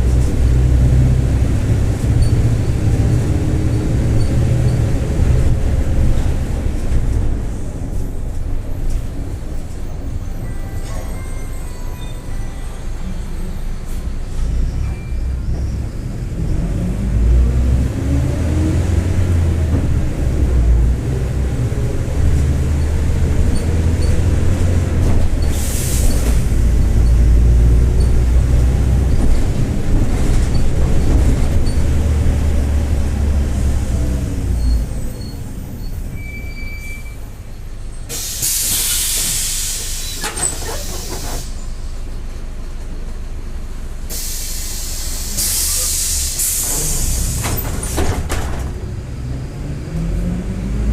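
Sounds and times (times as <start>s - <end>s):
bus differential whine: 0.0s - 50.9s
short beep: 36.2s - 37.2s
compressed air hiss: 38.1s - 40.2s, 44.1s - 47.4s.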